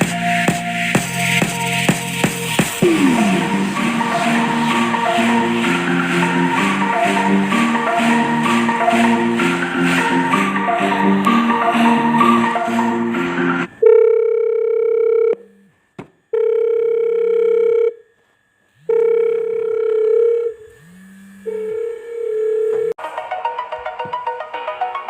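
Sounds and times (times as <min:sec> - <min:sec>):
electronic telephone tone: 0:13.7 - 0:18.1, 0:18.8 - 0:20.8, 0:21.5 - 0:23.0
melodic phone ringtone: 0:13.8 - 0:15.4.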